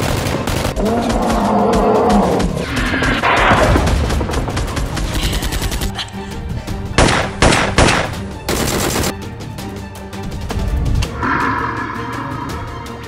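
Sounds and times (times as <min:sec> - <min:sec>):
background music: 0:00.0 - 0:13.0
automatic gunfire: 0:07.0 - 0:09.1.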